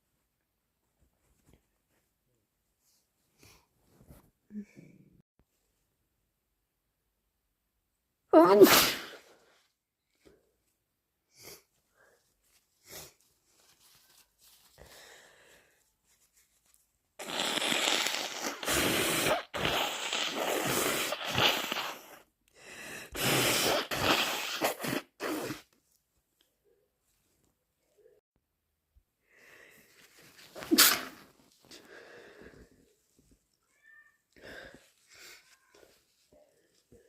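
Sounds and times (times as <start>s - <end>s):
person blowing congested nose: 8.5s - 9.3s, 17.2s - 25.7s, 30.5s - 32.6s
small sniffs: 17.2s - 25.8s, 29.4s - 32.8s.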